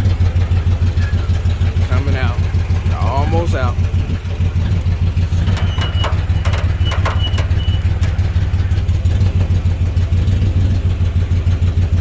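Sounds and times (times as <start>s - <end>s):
engine idling: 0.0s - 12.0s
thin high squeak: 5.4s - 8.2s.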